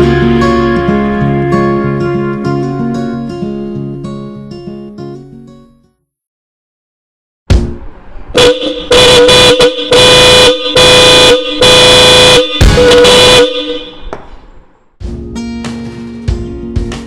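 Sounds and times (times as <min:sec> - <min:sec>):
horn blasts: 0:08.4 - 0:14.2.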